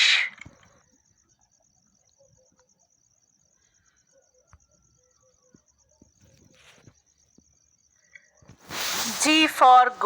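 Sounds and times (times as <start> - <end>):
cricket chirping: 0.0 - 10.0.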